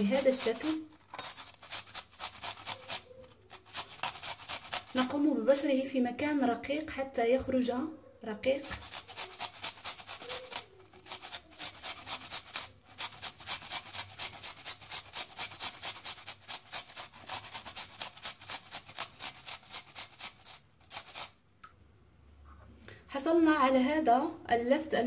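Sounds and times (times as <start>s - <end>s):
turnip grated on a hand grater: 0.0s - 5.3s, 8.6s - 21.4s.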